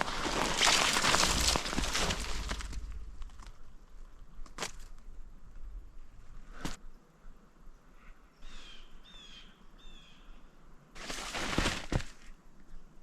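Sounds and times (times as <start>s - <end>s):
rustling and crashing: 0.0s - 3.6s, 11.0s - 12.2s.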